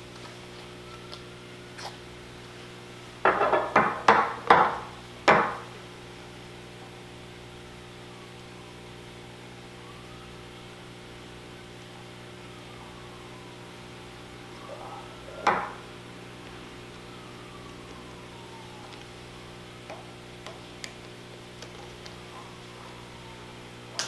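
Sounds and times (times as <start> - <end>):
steady low hum: 0.0 - 24.0
hard drive knocking on work surface: 3.2 - 5.7.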